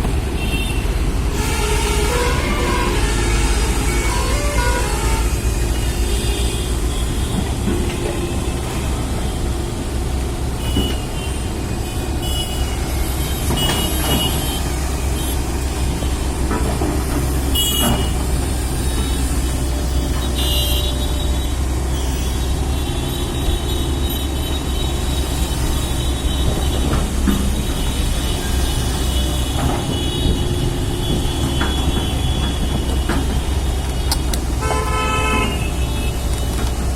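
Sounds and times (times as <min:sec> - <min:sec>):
construction machine engine rumbling: 0:00.0 - 0:36.9.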